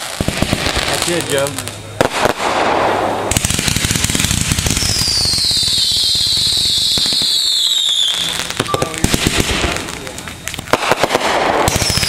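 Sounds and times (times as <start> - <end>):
fireworks crackling pops: 0.0 - 12.0
falling firework whistle: 2.4 - 9.8, 11.2 - 12.0.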